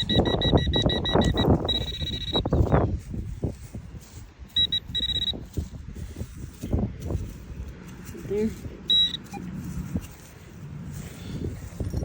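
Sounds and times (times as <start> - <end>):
metal detector beeping: 0.0 - 6.5, 8.8 - 10.1
wind buffeting microphone: 0.0 - 12.0
digging scraping in hard dirt: 8.8 - 12.0.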